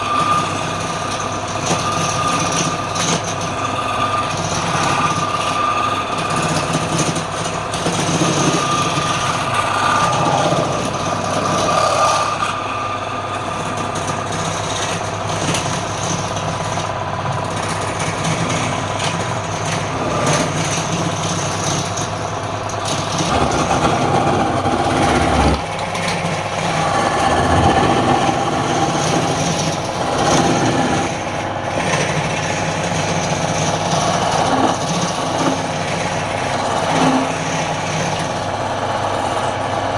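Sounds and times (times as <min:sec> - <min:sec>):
turning tool scraping wood: 0:00.0 - 0:39.9
wood lathe running: 0:00.0 - 0:39.9.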